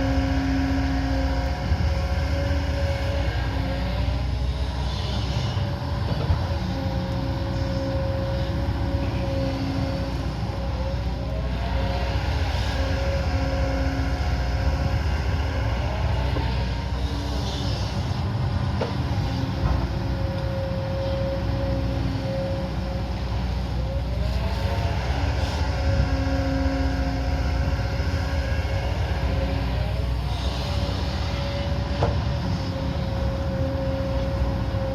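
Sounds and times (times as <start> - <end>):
excavator diesel engine under load: 0.0 - 34.9
hydraulic whine gliding upward: 0.0 - 34.9.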